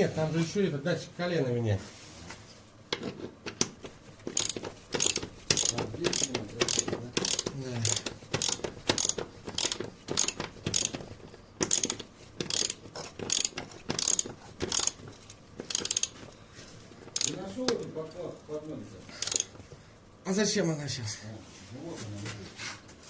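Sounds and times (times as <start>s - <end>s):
ratchet wrench clicking: 4.3s - 16.4s, 17.1s - 17.9s, 19.2s - 19.6s.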